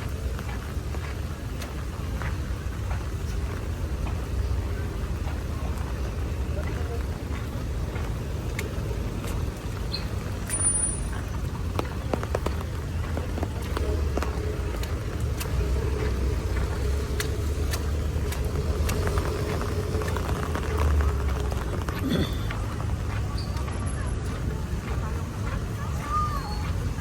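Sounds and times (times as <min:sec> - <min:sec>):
vehicle engines rumbling: 0:00.0 - 0:27.0
light ticks: 0:06.6 - 0:22.0.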